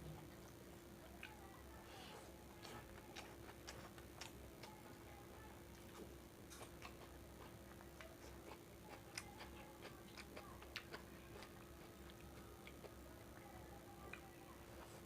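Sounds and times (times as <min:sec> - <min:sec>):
faint steady hum: 0:00.0 - 0:15.0
chewing and mouth noises: 0:02.5 - 0:05.1, 0:05.7 - 0:13.4.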